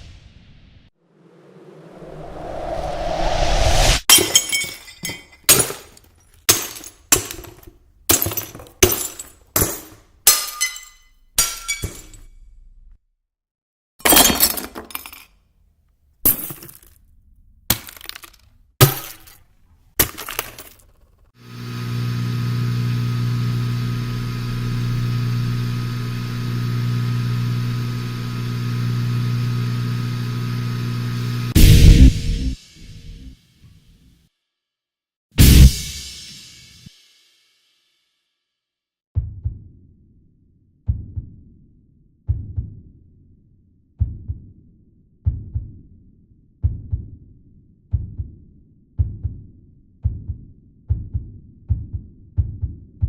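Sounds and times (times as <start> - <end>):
glass smashing and tinkling: 4.1 - 12.2
steady low hum: 21.5 - 33.3
loud hit: 31.5 - 33.3.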